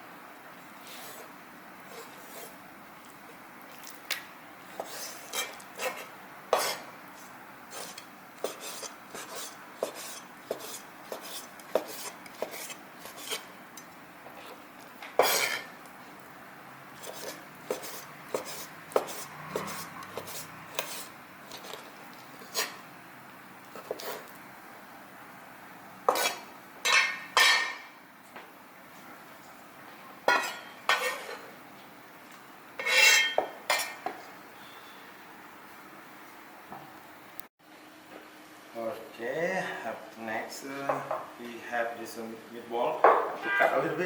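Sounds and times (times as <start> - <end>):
knife chopping on cutting board: 7.8 - 13.4, 17.0 - 21.1, 26.1 - 26.4.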